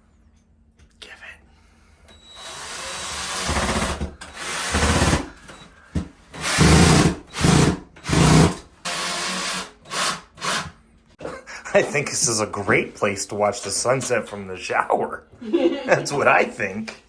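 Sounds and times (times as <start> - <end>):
power drill driving screws: 2.1 - 5.6, 6.3 - 10.8.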